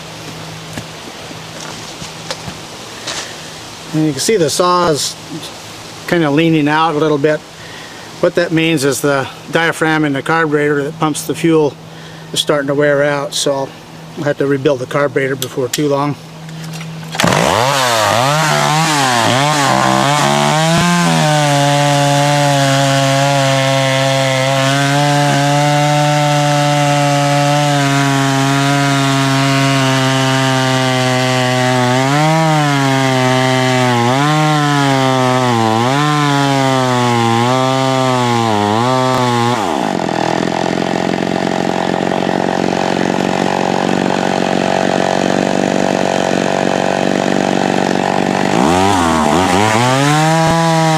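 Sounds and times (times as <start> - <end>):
man talking: 3.9 - 5.5, 6.1 - 7.4, 8.2 - 16.2
chainsaw cutting wood: 16.6 - 50.9.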